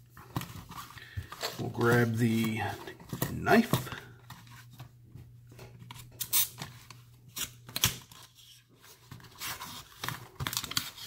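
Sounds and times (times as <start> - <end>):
knife cutting packaging: 9.2 - 11.0.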